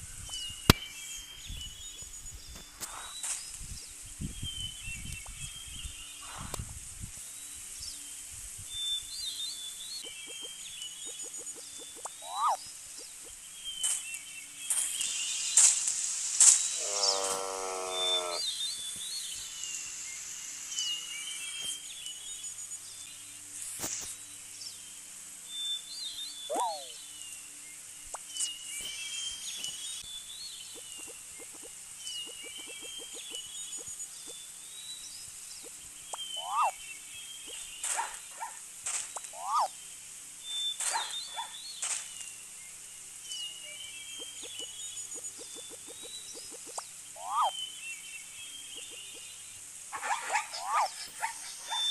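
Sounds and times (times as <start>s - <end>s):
birds chirping: 0.0s - 51.9s
low animal call: 16.8s - 18.4s.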